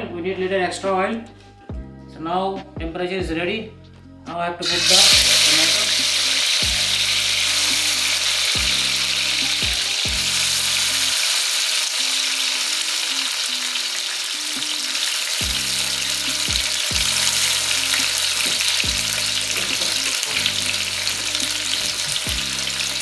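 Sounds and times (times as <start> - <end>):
tomatoes sizzling in oil: 4.6 - 23.0.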